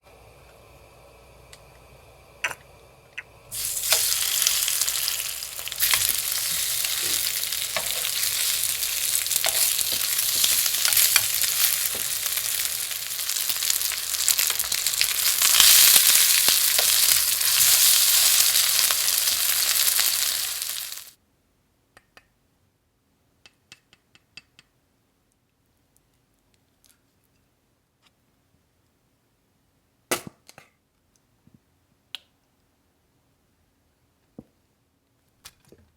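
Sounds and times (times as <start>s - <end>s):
cutlet sizzling in hot oil: 3.5s - 21.2s.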